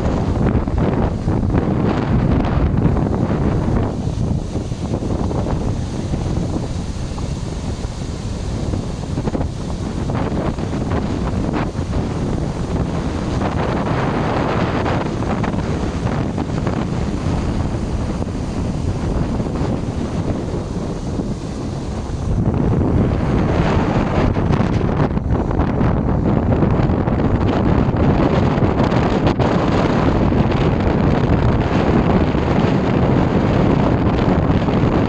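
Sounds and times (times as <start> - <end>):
blizzard wind buffeting microphone: 0.0 - 35.0.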